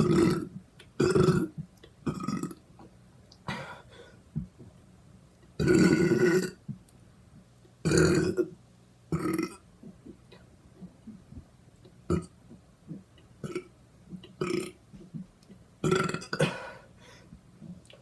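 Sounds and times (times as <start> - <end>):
person burping: 0.0 - 2.6, 5.6 - 6.6, 7.8 - 9.6, 12.9 - 13.7, 14.4 - 14.8, 15.8 - 16.8.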